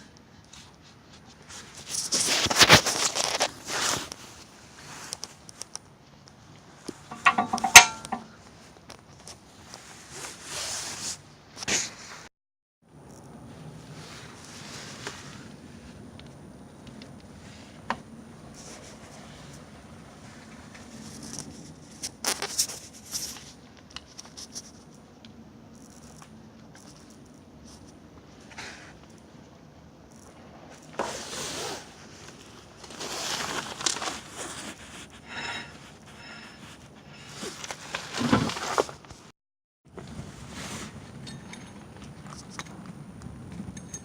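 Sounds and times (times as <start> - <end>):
scraping and clattering: 6.9 - 8.4
ringing metal clink: 7.1 - 8.3.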